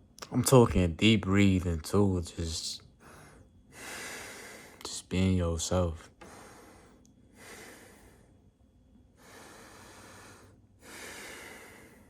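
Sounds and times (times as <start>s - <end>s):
person breathing deeply: 3.0s - 4.8s, 6.2s - 8.5s, 9.1s - 12.0s.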